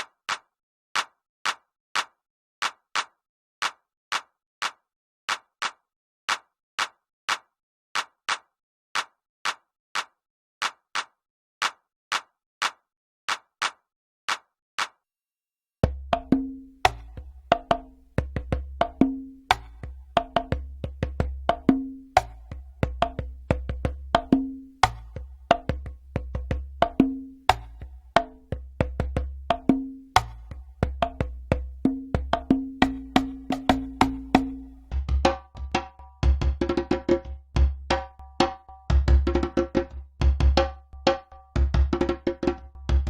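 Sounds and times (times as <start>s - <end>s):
conga drum loop: 15.8s - 43.0s.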